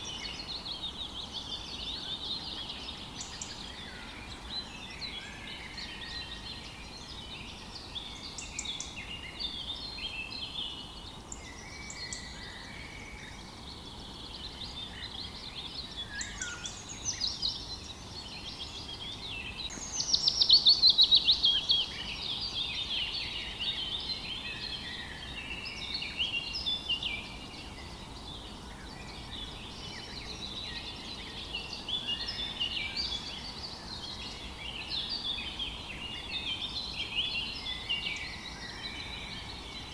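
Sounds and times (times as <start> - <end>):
songbirds singing and calling: 0.0 - 39.9.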